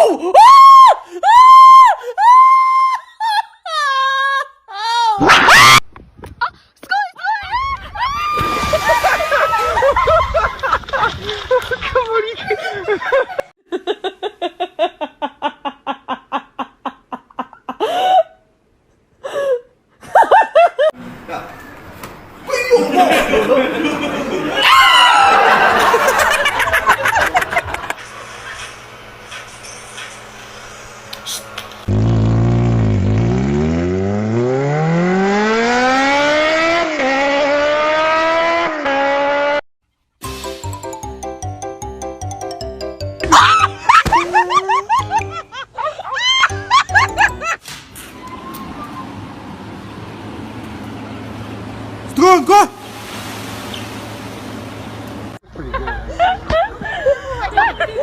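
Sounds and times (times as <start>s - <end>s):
car engine accelerating hard: 31.8s - 39.6s.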